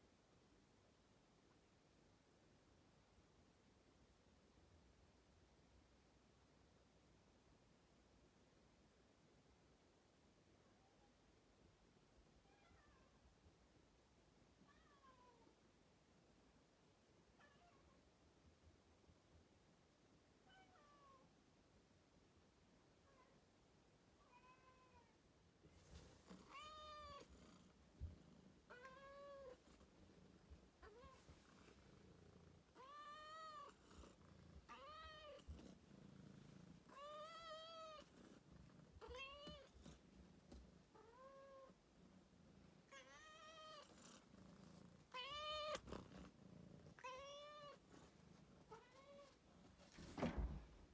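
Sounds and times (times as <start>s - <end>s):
cat meowing: 34.7s - 35.5s, 39.0s - 39.7s, 42.9s - 43.9s, 45.1s - 45.9s, 47.0s - 47.8s.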